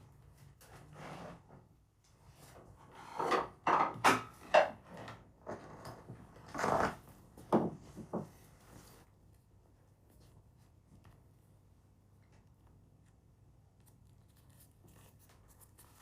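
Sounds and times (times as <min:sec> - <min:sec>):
kitchen utensils scraping and knocking: 0:02.8 - 0:07.0.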